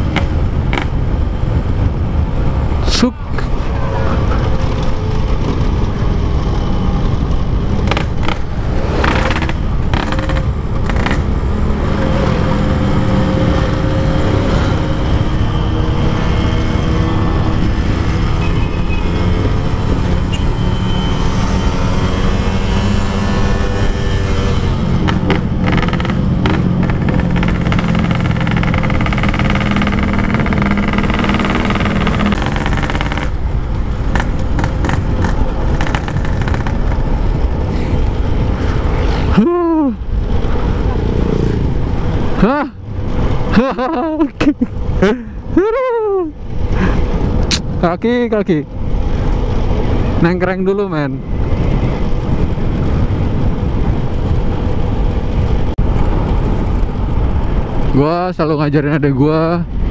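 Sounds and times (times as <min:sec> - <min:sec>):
two-stroke motorcycle engine revving: 0:07.8 - 0:37.0.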